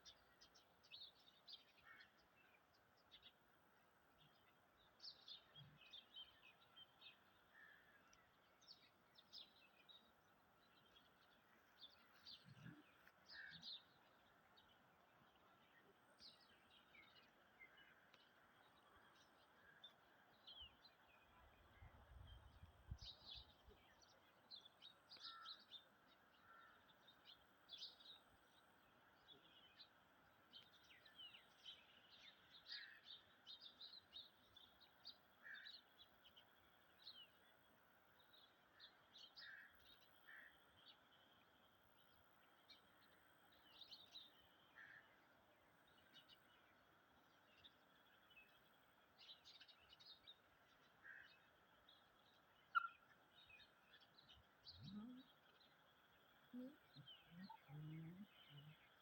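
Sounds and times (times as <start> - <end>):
bird chirps and calls: 52.4 - 59.0.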